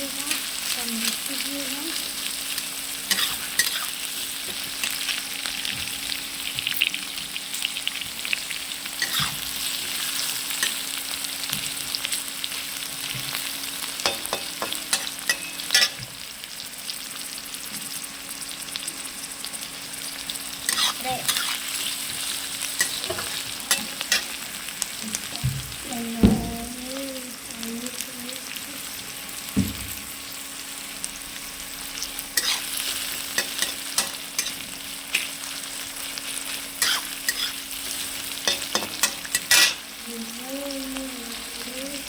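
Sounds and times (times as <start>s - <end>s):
vegetables sizzling in hot oil: 0.0s - 42.0s
spatula scraping a pan: 3.1s - 4.0s, 9.0s - 10.8s, 20.6s - 24.3s, 32.4s - 35.3s, 36.5s - 39.8s.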